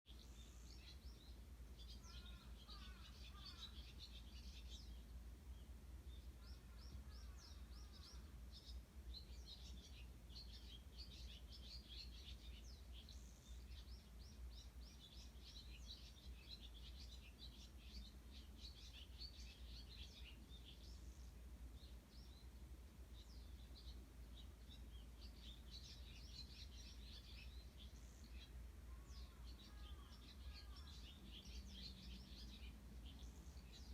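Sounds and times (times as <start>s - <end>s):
sparrows chirping: 0.1s - 33.9s
crows calling: 2.0s - 3.9s, 6.4s - 8.4s, 28.9s - 31.2s.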